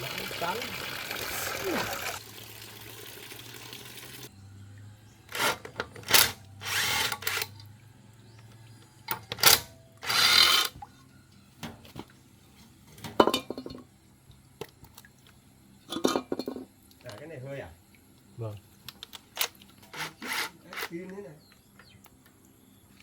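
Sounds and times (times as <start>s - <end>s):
tool worked in short bursts: 5.3s - 7.5s, 9.1s - 10.8s, 19.9s - 20.9s.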